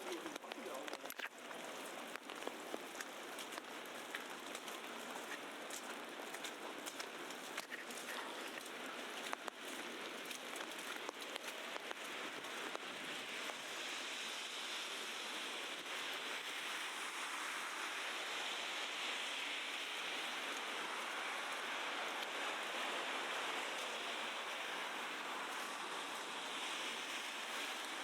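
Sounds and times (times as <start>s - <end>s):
wet snow pattering: 0.0s - 28.0s.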